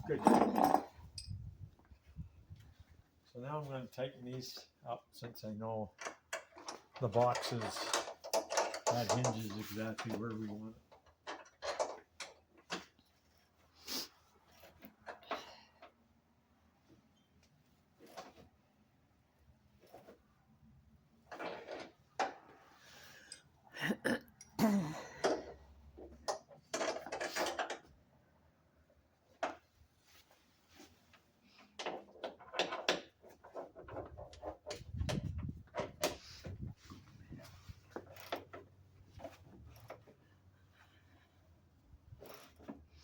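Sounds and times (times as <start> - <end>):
hand tools clanking on metal: 0.0 - 1.4, 6.0 - 12.5.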